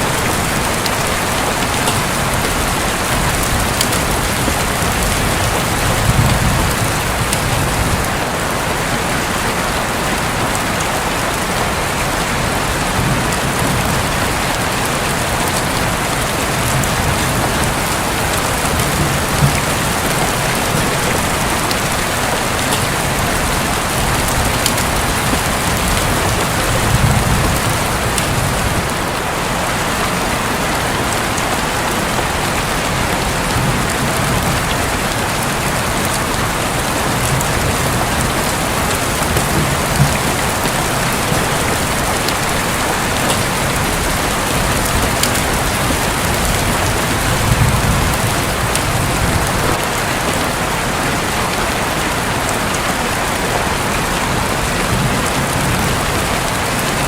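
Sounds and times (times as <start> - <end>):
distant thunder rumble: 0.0 - 8.3, 11.5 - 30.0, 32.4 - 50.0
heavy rain on a roof: 0.0 - 57.0.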